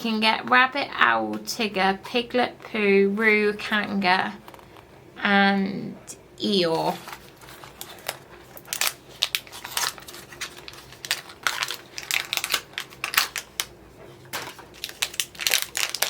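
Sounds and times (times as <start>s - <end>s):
packaging crinkling and clicking: 7.0s - 16.0s.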